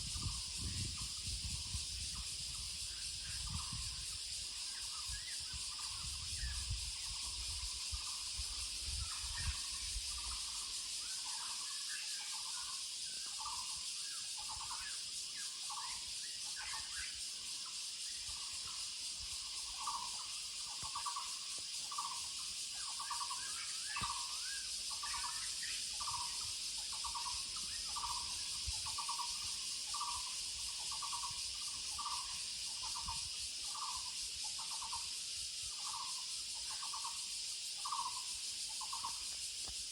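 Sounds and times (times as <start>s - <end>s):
steady high hiss: 12.2s - 39.9s.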